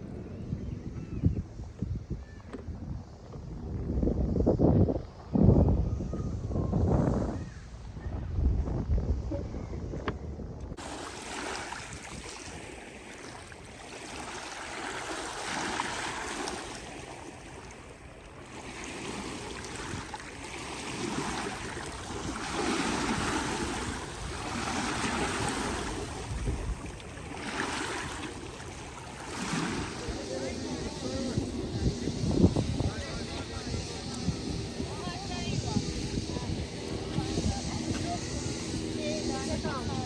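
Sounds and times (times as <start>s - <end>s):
waves washing on pebble beach: 10.8s - 30.3s.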